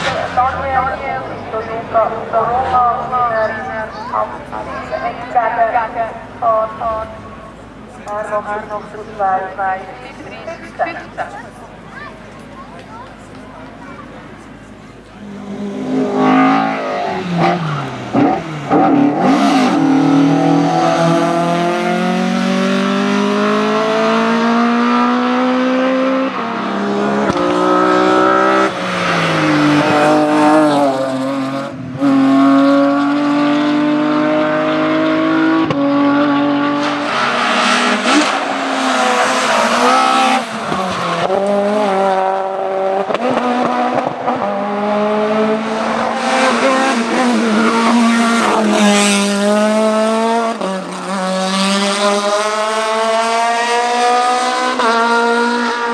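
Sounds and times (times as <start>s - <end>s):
race car engine revving: 0.0s - 55.9s.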